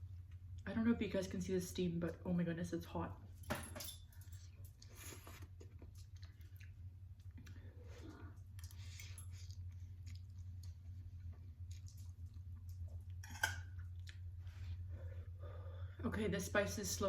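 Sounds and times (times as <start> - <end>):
person chewing noodles: 4.7 - 15.2.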